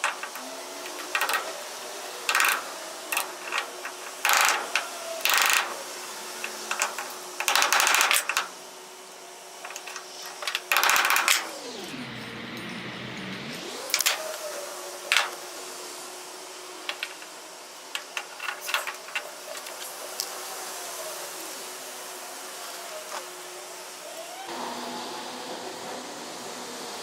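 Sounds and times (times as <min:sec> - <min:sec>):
motor humming: 0:00.0 - 0:20.0.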